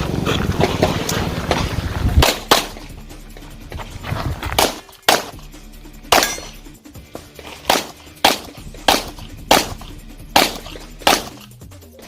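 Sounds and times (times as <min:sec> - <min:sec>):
handgun shots: 0:02.2 - 0:02.8, 0:04.6 - 0:05.4, 0:06.1 - 0:06.6, 0:07.6 - 0:11.5.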